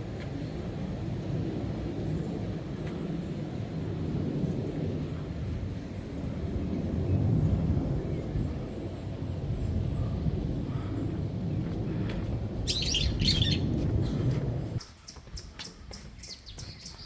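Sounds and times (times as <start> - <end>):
loud low rumbling: 3.6 - 14.8
birds chirping: 9.6 - 17.0.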